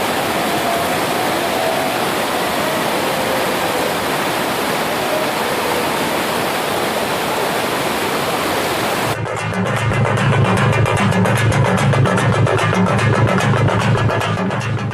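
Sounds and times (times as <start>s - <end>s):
fast-flowing water rushing: 0.0s - 9.2s.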